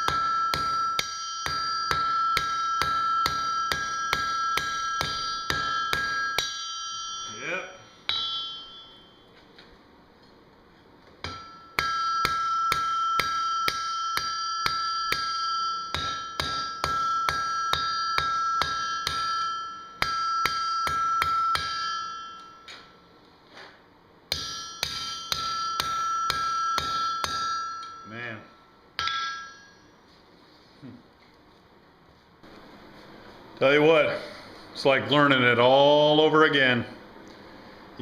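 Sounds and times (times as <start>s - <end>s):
hammer striking steel on anvil: 0.0s - 9.4s, 11.2s - 23.0s, 24.3s - 30.0s.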